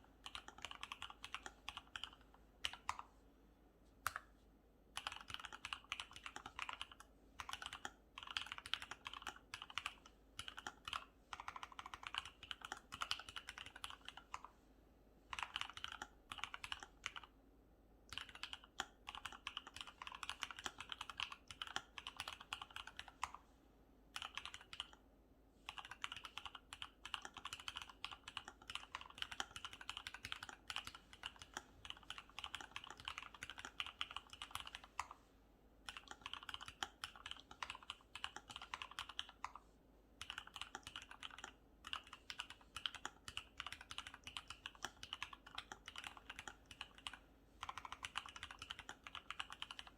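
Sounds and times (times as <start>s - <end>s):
mechanical keyboard typing: 0.2s - 3.0s, 5.0s - 14.5s, 15.3s - 17.3s, 18.1s - 23.4s, 24.2s - 25.0s, 25.7s - 35.2s, 35.9s - 39.6s, 40.2s - 49.9s.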